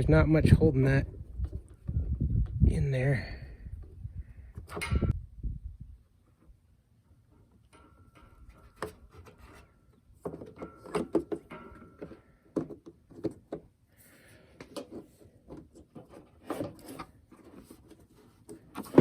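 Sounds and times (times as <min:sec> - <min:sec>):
plastic parts clicking and rubbing: 0:14.5 - 0:19.0.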